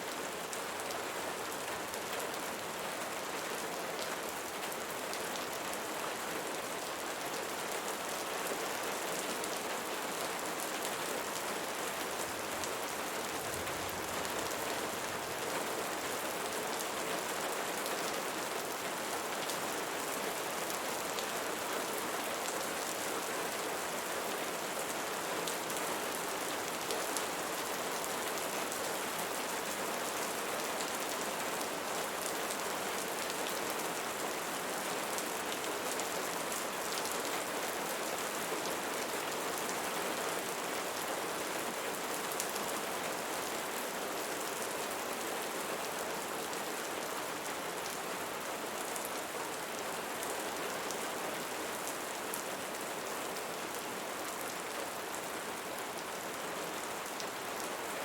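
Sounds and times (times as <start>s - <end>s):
steady rain hissing: 9.6s - 17.5s.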